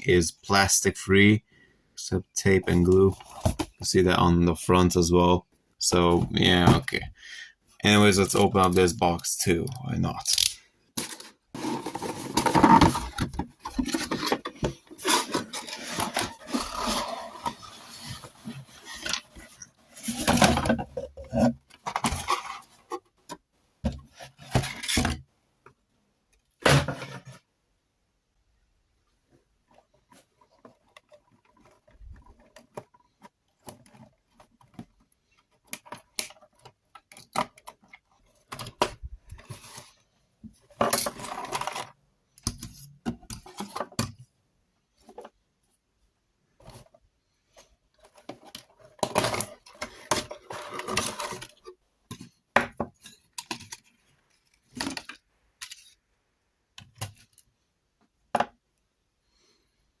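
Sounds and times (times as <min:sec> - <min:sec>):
cardboard scraping and rustling: 0:11.0 - 0:23.2, 0:23.9 - 0:25.2, 0:46.6 - 0:52.4.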